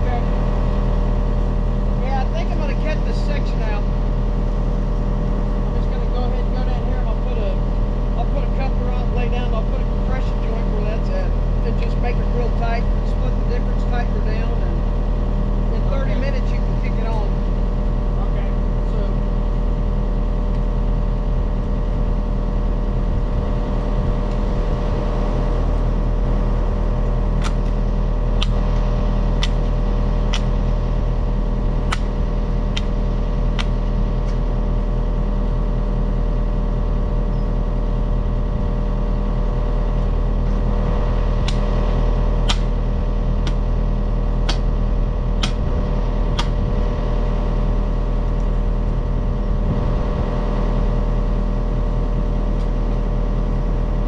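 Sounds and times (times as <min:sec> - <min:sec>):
diesel engine running: 0:00.0 - 0:54.0
sharp clicks: 0:27.4 - 0:27.8, 0:31.9 - 0:32.1, 0:41.4 - 0:41.7, 0:42.4 - 0:42.8.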